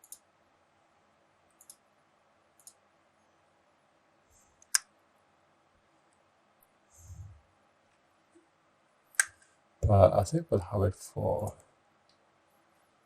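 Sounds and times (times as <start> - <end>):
computer mouse clicks: 0.0 - 0.3, 1.5 - 1.8, 2.6 - 2.8, 4.6 - 4.9.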